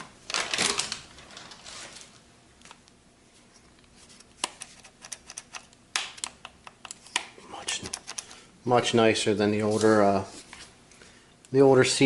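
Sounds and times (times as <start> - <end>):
packaging rustling: 0.3 - 2.2.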